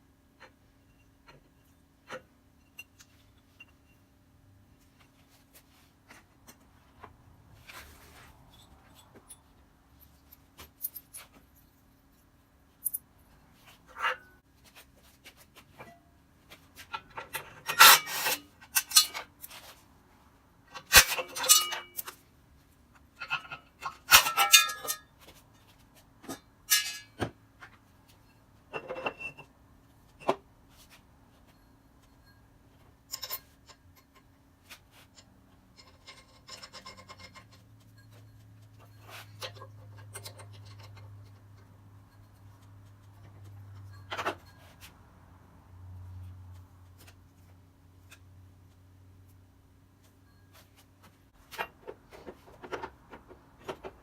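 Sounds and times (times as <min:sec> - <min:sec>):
metal parts clinking and scraping: 0:07.6 - 0:19.8, 0:20.6 - 0:22.3, 0:22.9 - 0:29.5, 0:30.1 - 0:45.0.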